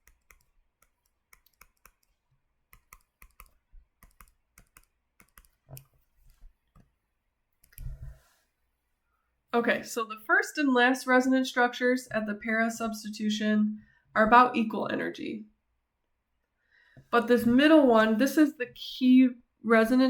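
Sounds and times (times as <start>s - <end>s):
stylus tapping on tablet screen: 0.0s - 2.1s, 2.7s - 6.9s.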